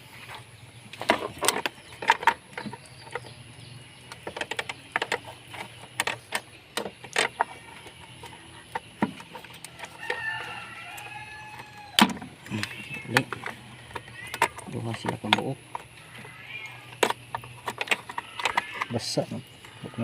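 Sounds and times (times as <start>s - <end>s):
hand tools clicking and clinking: 0.9s - 3.4s, 4.0s - 20.0s
rooster crowing: 9.6s - 12.4s.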